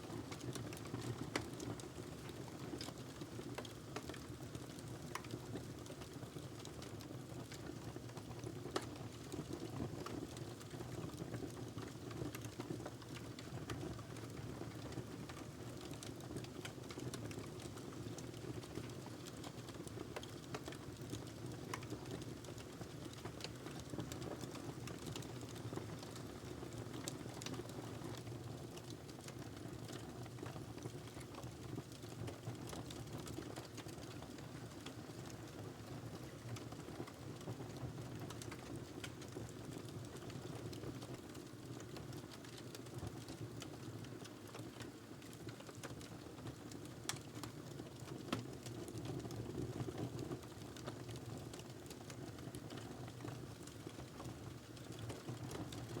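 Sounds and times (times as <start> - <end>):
wood fire crackling: 5.1 - 5.3, 15.0 - 17.8, 18.4 - 35.6, 37.7 - 49.0, 51.1 - 56.0.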